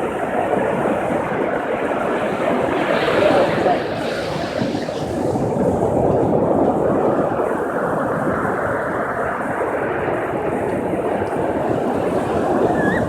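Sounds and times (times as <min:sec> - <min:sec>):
surf washing on beach: 0:00.0 - 0:13.0.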